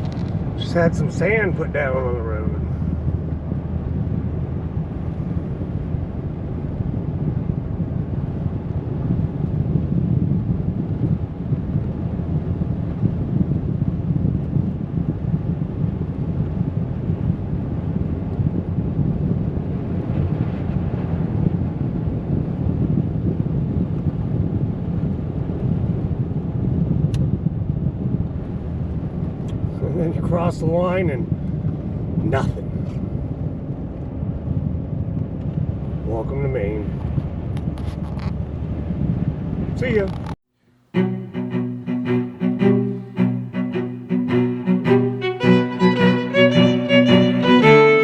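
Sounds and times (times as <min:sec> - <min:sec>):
vehicle road and engine rumble: 0:00.0 - 0:21.2, 0:27.6 - 0:40.4.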